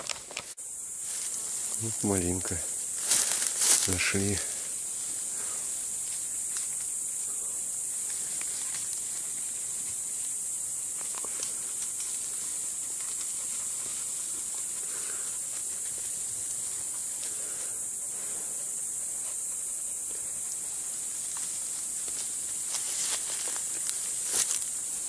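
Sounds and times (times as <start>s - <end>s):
footsteps rustling in undergrowth: 0.0s - 6.9s, 20.5s - 25.0s
steady high-pitched hiss: 0.0s - 25.0s.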